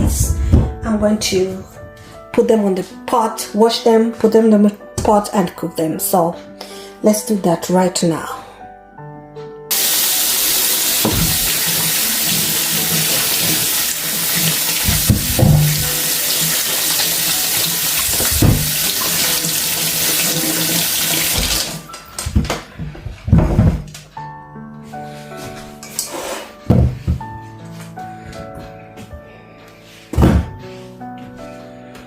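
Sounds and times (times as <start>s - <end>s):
tap water running into sink: 9.7s - 22.4s
vegetables knocking in sink: 11.0s - 11.7s, 14.8s - 16.0s, 18.0s - 19.3s.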